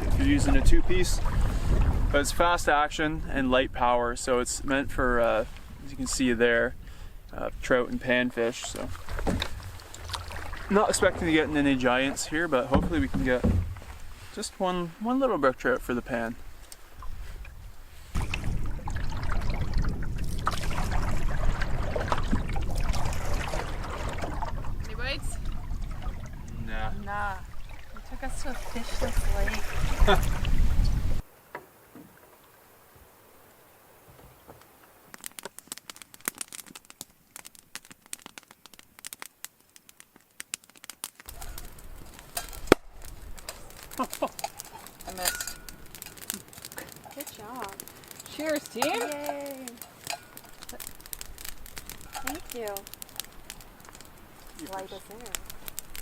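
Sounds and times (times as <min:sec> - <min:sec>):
water lapping against canoe hull: 0:00.0 - 0:02.8, 0:07.9 - 0:36.5
wind rumble on microphone: 0:00.0 - 0:14.2, 0:15.7 - 0:31.3
foil crinkling and tearing: 0:35.2 - 0:45.2, 0:45.8 - 0:56.0
cork popping: 0:42.3 - 0:47.2.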